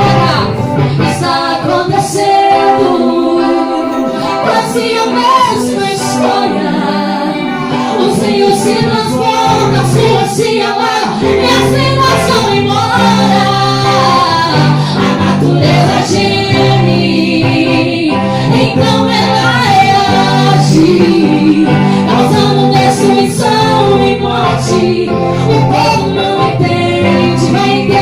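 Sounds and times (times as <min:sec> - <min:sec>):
gospel singing: 0:00.0 - 0:28.0
instrumental backing: 0:00.0 - 0:28.0.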